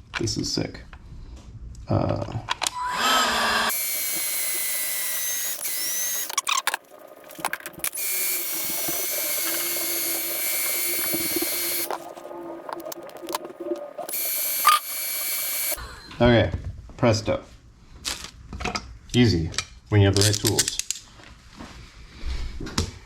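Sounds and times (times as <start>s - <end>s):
heat gun whirring: 2.6s - 6.7s, 7.8s - 12.0s, 14.1s - 15.8s.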